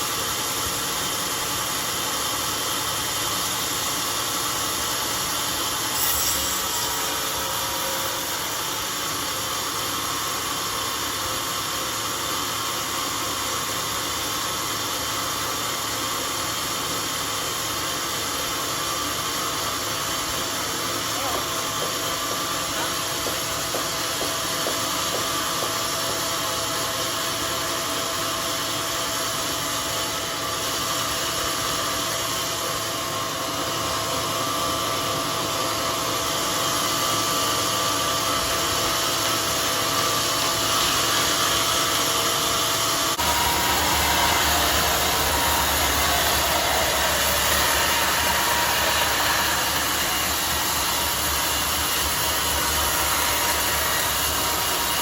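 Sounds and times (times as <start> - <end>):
sawmill sawing wood: 16.6 - 55.0.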